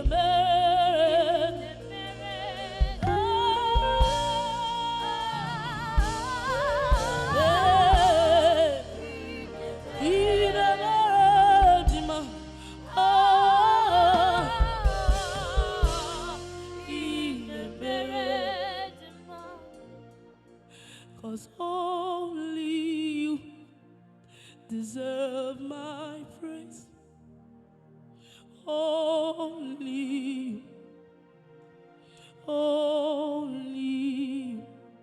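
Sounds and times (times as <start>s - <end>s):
person singing with vibrato: 0.0s - 19.9s
instrumental accompaniment: 0.0s - 21.0s.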